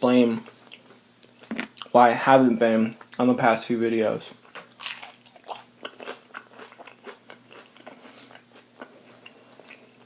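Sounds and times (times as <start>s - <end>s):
person chewing crunchy food: 0.4s - 2.0s, 4.4s - 10.0s.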